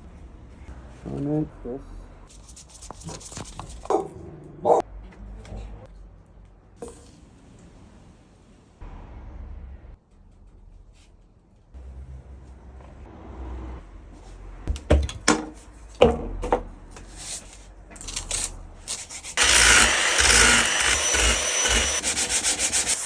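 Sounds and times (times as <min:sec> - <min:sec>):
power tool rushing with whine: 0:19.4 - 0:23.0.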